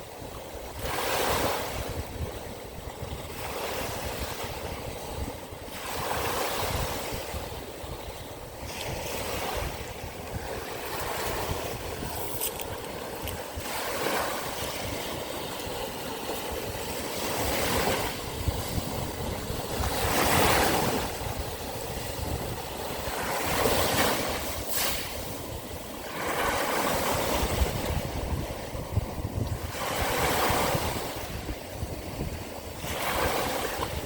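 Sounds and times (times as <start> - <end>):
sea waves washing onto shore: 0.0 - 34.0
wind rumbling on microphone: 0.0 - 34.0.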